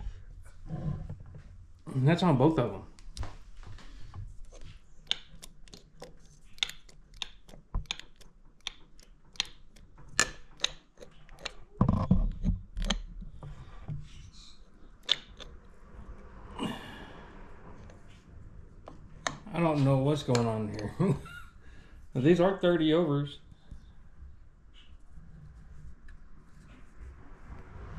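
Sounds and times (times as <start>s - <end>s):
metal engine parts clicking: 5.0s - 11.8s.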